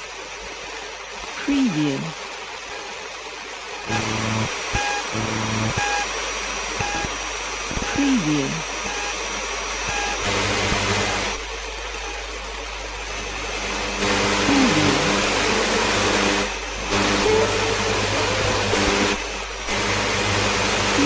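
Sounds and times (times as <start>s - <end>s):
radio static hiss: 0.0s - 21.0s
low hum: 3.8s - 21.0s
short beeps: 3.9s - 6.2s, 6.8s - 9.2s.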